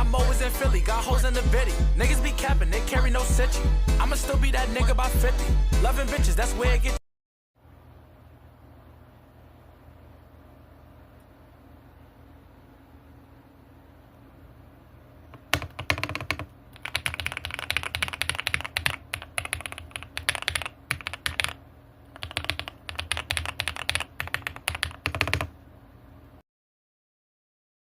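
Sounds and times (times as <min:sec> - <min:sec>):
mechanical keyboard typing: 0:15.3 - 0:25.5.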